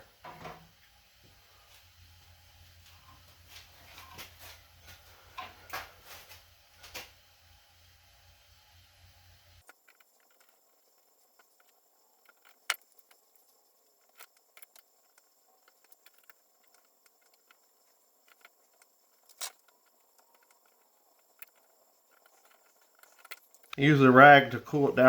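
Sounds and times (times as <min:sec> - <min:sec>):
tools and wiring clicking and tapping: 0:09.6 - 0:23.9.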